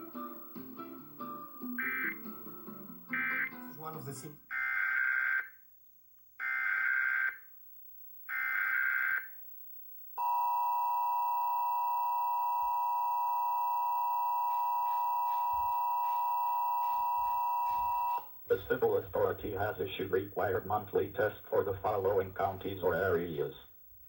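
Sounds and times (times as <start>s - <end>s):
data tone bursts: 1.8s - 2.2s, 3.2s - 3.6s, 10.2s - 18.3s
two-tone attention signal: 1.8s - 2.2s, 3.1s - 3.7s, 10.2s - 18.2s.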